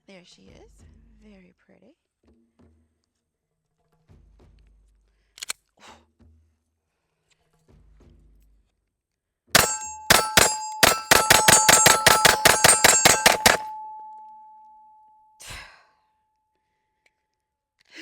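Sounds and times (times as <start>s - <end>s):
pistol shots: 9.6s - 14.9s
steel targets ringing: 9.6s - 15.2s.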